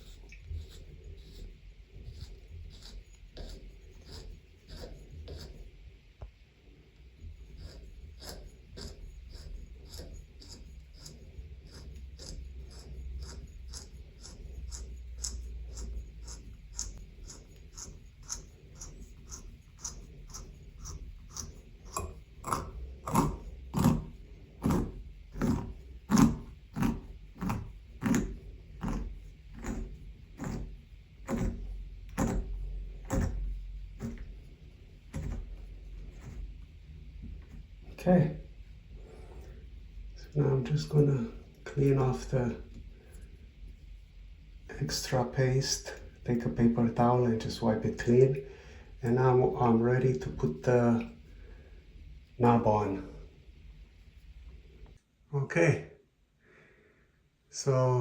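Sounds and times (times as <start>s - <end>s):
threaded sleeve grating when screwed: 7.5s - 36.6s.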